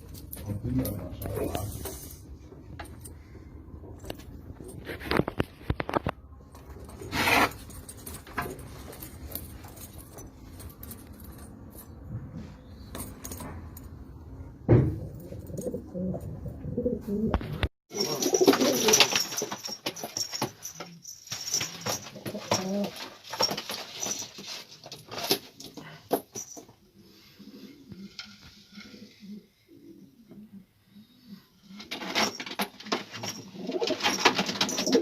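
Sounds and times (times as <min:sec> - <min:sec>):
clicks and rustles: 0:00.0 - 0:14.0, 0:17.3 - 0:26.8, 0:31.8 - 0:35.0
pigeons cooing: 0:15.0 - 0:19.0, 0:27.1 - 0:31.9.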